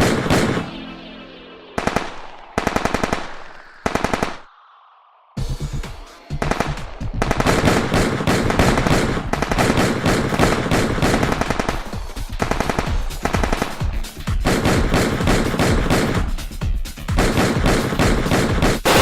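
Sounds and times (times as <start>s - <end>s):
machine-gun fire: 0.0s - 0.7s, 1.8s - 4.5s, 6.4s - 16.3s, 17.2s - 19.0s.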